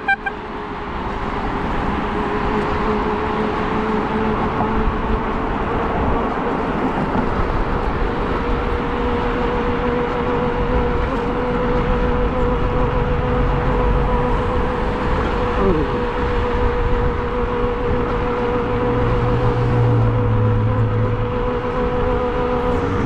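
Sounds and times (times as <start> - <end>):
wind rush over microphone: 1.0 - 23.0
electric motor whine: 8.3 - 23.0.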